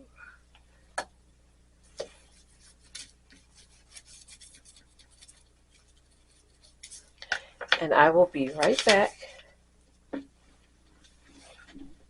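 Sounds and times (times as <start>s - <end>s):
scratchy rubbing strokes: 2.2s - 7.1s.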